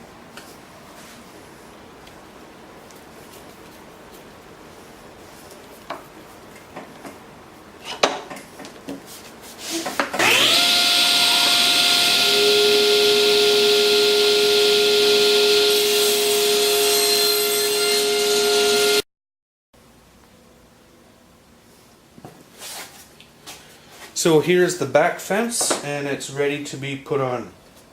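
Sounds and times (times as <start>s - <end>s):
table saw motor whining: 10.2s - 19.0s.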